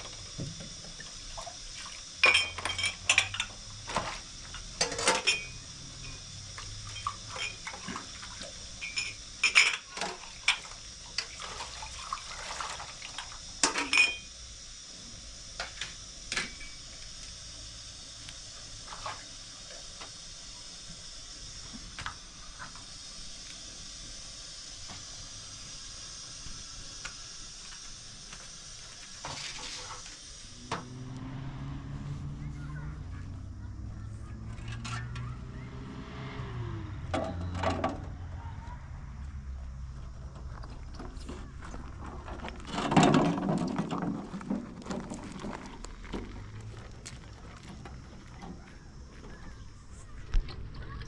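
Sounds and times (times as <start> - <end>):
steady hiss: 0.0 - 34.5.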